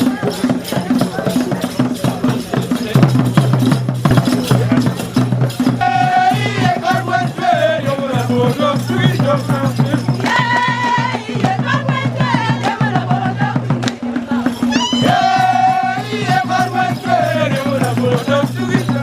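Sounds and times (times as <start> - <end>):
shaker and rattle rhythm: 0.0 - 19.0.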